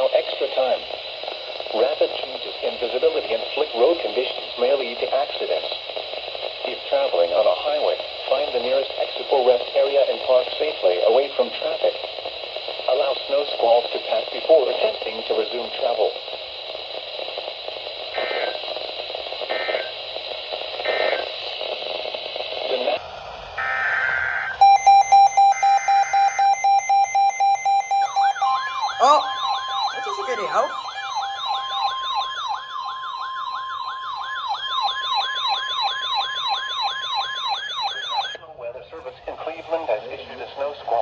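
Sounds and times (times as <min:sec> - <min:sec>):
radio static: 0:00.0 - 0:24.8, 0:27.1 - 0:32.6, 0:37.8 - 0:41.0
two-tone data bursts: 0:11.6 - 0:23.0, 0:23.6 - 0:32.8
steady single tone: 0:23.6 - 0:32.2
yelping siren tone: 0:23.6 - 0:38.4.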